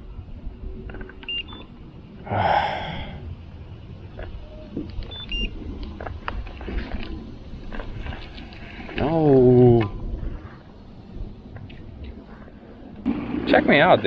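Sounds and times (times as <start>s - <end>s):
two-tone electronic beeps: 1.2s - 1.7s, 5.1s - 5.6s.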